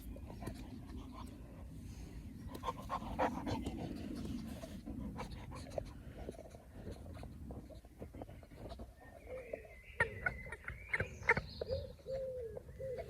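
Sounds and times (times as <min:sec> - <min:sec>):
dog panting: 0:02.5 - 0:09.0.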